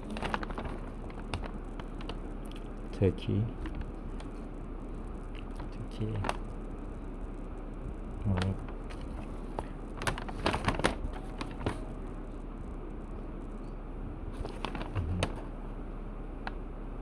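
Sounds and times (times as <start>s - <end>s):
paper pages rustling: 0.0s - 2.3s, 8.3s - 12.0s, 14.3s - 15.5s
steady low hum: 0.0s - 17.0s.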